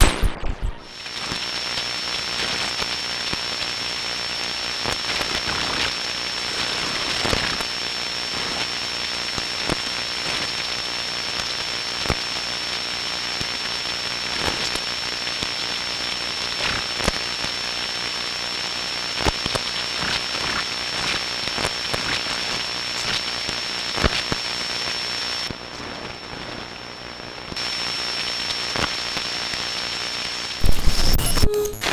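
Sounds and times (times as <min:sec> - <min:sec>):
high steady whine: 0:00.0 - 0:08.6, 0:27.6 - 0:31.9
radio static hiss: 0:00.0 - 0:31.9
static crackles: 0:00.0 - 0:31.9.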